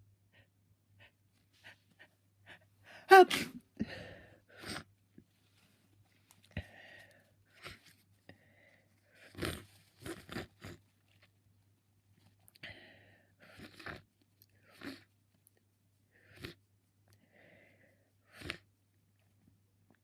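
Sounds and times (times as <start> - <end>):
soft breaths: 0.2 - 10.9, 12.1 - 19.6
person sniffling: 2.8 - 4.9.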